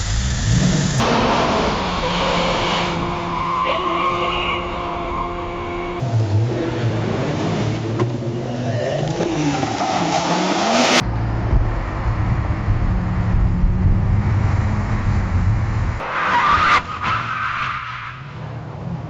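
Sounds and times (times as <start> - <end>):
car engine revving: 0.0 - 19.0
low engine rumble: 11.0 - 16.0.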